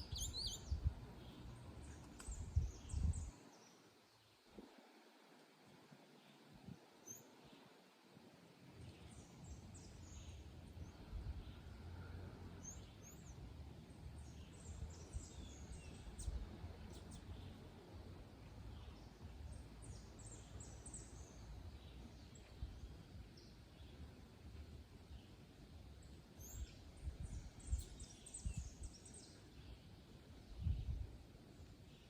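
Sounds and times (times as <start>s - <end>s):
low steady rumble: 0.0s - 3.3s, 8.8s - 32.0s.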